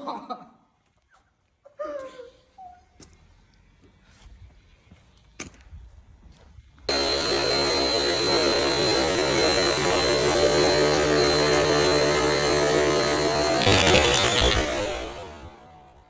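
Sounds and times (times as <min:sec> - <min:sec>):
electric motor whining: 0:06.9 - 0:16.0.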